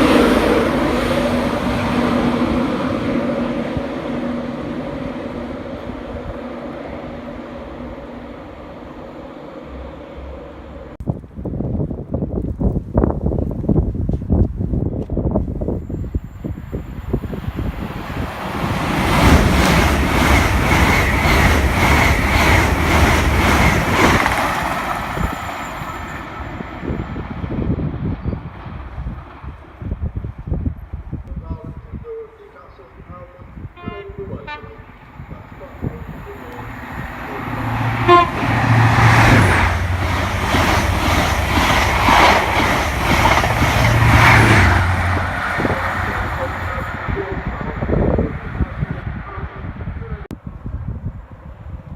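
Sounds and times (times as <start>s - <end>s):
train passing: 0.0s - 11.0s, 15.8s - 31.0s, 32.0s - 50.3s
wheels beating over rail: 18.5s - 25.8s
train horn toot: 33.8s - 35.0s, 37.6s - 39.2s.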